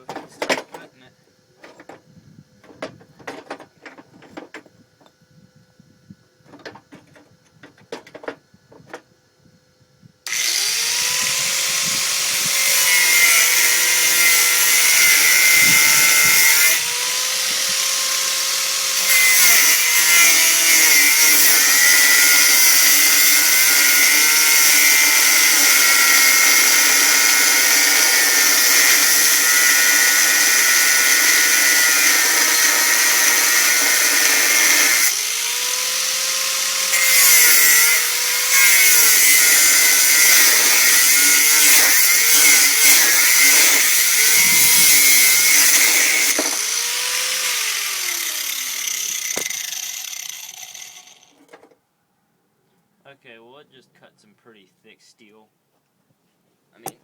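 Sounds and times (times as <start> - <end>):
angle grinder cutting steel: 10.3 - 51.4.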